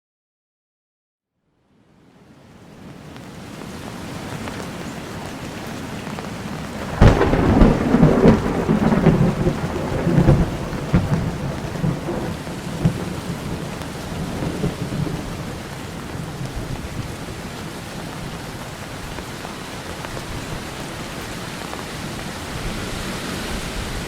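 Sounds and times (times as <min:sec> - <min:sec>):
steady rain: 0:01.7 - 0:24.0
thunderclap and rumbling: 0:06.6 - 0:19.3.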